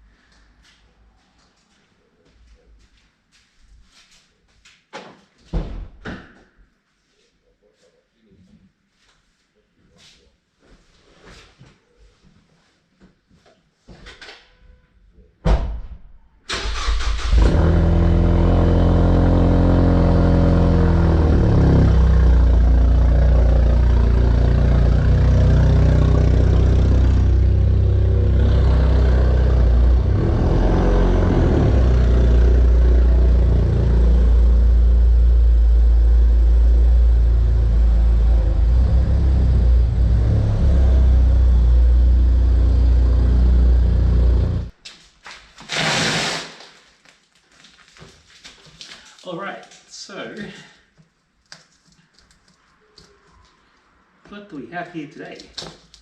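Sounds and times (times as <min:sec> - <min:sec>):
car engine starting and running: 0:16.5 - 0:44.7.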